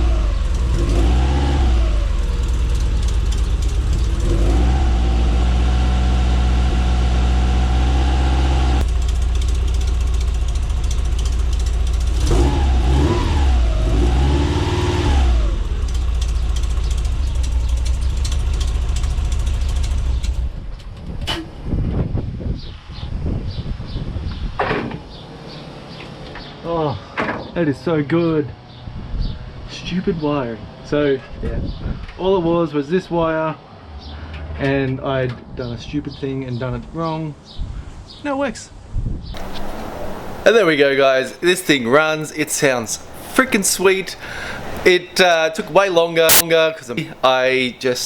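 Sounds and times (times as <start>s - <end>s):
engine idling and revving: 0.0s - 21.4s, 39.4s - 40.5s.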